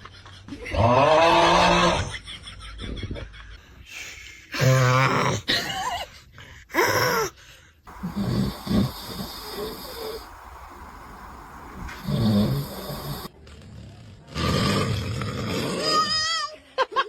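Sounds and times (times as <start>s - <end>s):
man snoring: 7.9s - 13.3s.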